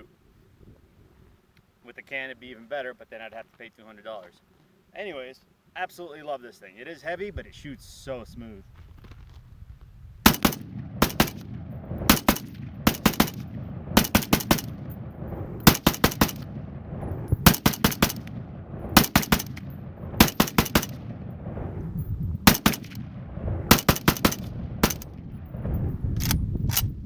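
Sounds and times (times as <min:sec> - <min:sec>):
suppressed rifle shots: 0:10.2 - 0:21.3, 0:22.4 - 0:26.9.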